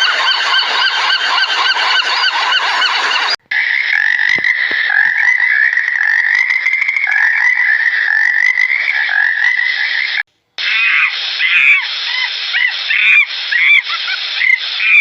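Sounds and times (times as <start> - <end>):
frogs calling in chorus: 0.0 - 11.8.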